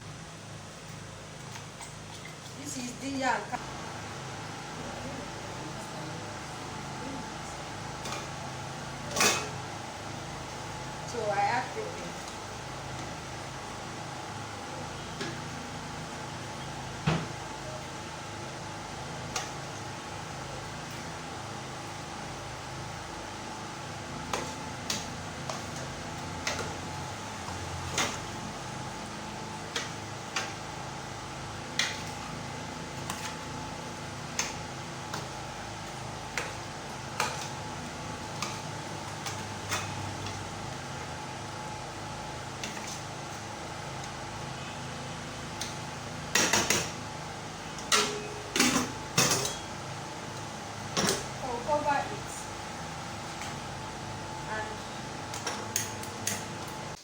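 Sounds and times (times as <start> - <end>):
steady hum: 0.0 - 57.0
pots and utensils clinking: 9.1 - 9.6, 45.6 - 47.0, 47.8 - 49.8.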